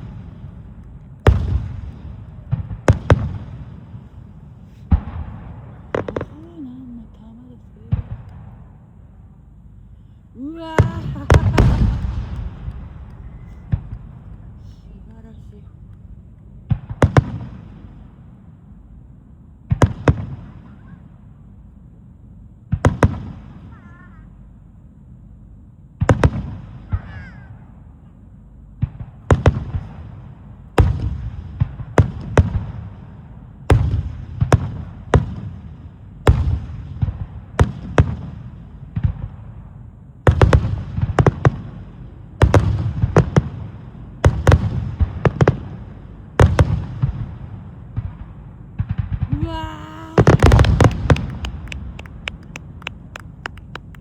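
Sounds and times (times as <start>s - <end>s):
firework shells bursting: 10.8s - 14.6s, 50.2s - 54.0s.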